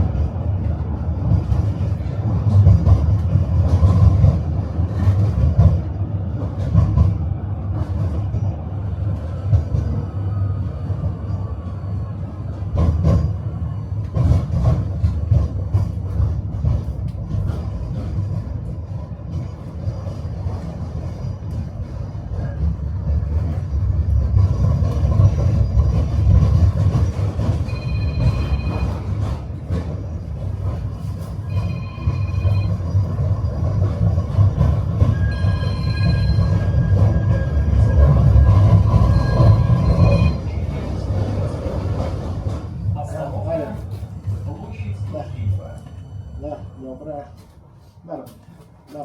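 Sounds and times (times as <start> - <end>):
tram wheels rumbling: 0.0 - 49.0.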